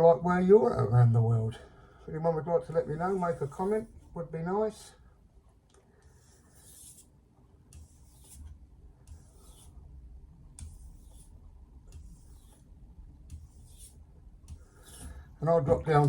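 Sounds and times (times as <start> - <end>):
knife scraping on whetstone: 6.1 - 7.1, 7.8 - 8.5, 9.1 - 9.8, 10.6 - 15.2.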